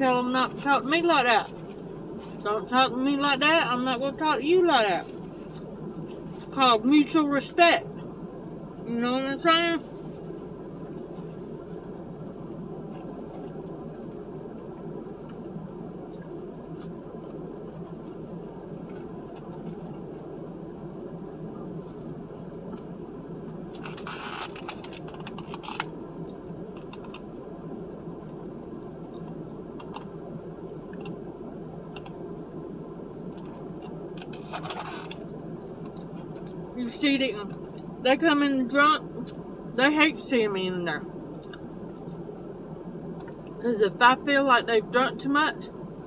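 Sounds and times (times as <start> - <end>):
steady low hum: 0.0 - 46.0.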